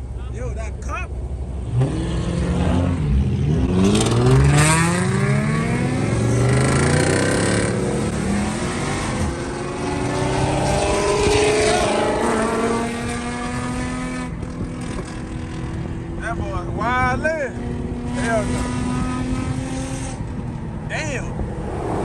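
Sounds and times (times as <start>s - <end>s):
car engine revving at full throttle: 1.5s - 22.0s.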